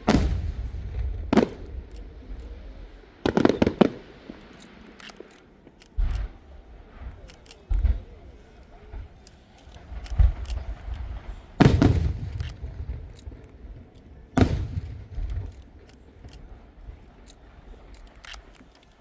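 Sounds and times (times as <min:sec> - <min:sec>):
fireworks booming: 0:00.0 - 0:04.9, 0:09.8 - 0:17.9
fireworks crackling pops: 0:00.0 - 0:08.2, 0:09.2 - 0:16.7.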